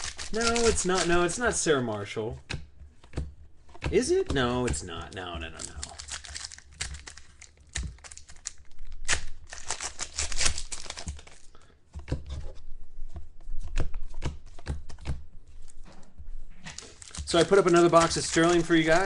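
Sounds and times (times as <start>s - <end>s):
wrappers tearing and crinkling: 0.0s - 1.4s, 5.5s - 11.5s, 16.6s - 19.0s.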